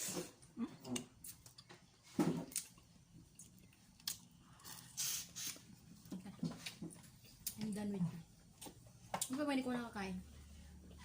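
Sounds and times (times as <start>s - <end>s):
hissing slurp: 4.9s - 5.6s.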